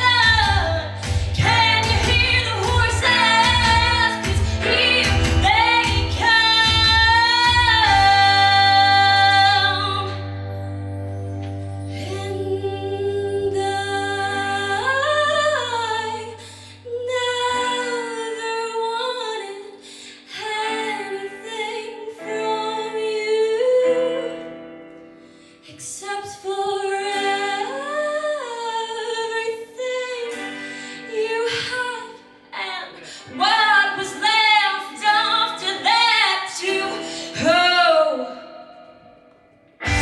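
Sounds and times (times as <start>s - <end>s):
woman singing: 0.0s - 10.6s, 11.8s - 39.3s
held chords: 38.6s - 40.0s.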